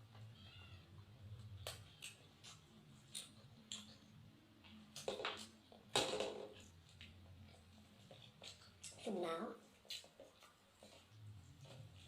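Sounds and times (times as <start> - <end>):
chewing clicks and smacks: 1.4 - 5.6, 6.7 - 9.1, 9.7 - 12.0.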